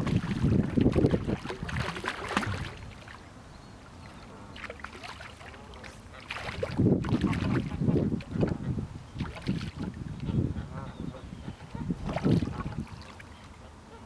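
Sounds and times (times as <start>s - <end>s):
wind buffeting microphone: 0.0s - 3.1s, 6.4s - 13.1s.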